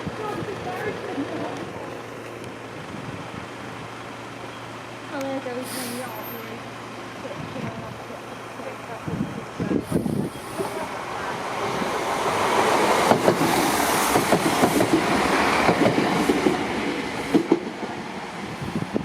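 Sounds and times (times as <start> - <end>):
passenger train passing: 0.0 - 19.0
wheels clacking over rail joints: 10.6 - 18.1.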